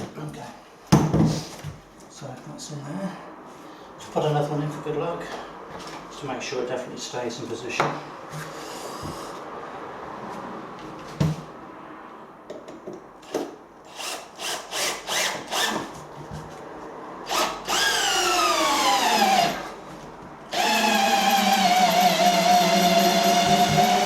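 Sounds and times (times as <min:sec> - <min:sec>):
cordless drill driving screw: 0:13.2 - 0:15.9, 0:17.3 - 0:19.6, 0:20.5 - 0:24.0.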